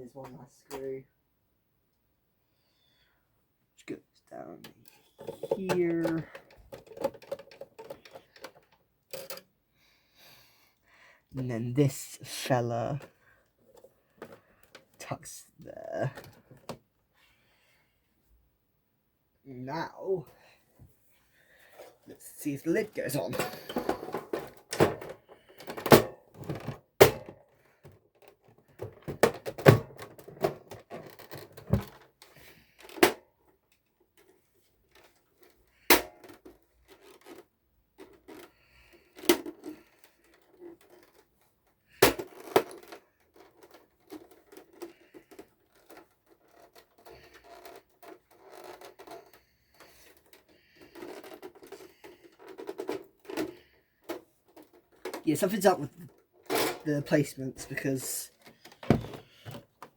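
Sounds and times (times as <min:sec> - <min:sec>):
scraping and handling: 0:04.6 - 0:09.4, 0:34.1 - 0:59.9.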